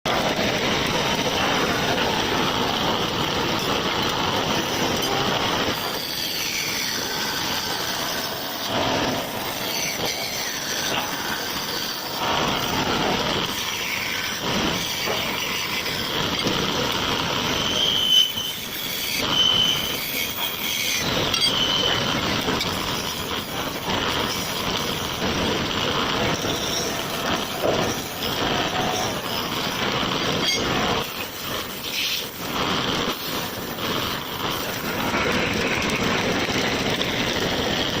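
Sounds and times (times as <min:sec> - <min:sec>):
short high squeals: 0:17.4 - 0:22.1.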